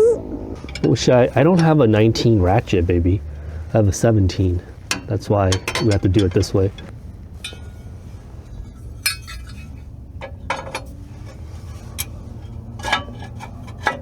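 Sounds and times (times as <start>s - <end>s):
low steady hum: 0.0s - 14.0s
metal tools clinking: 0.6s - 2.1s, 4.4s - 14.0s.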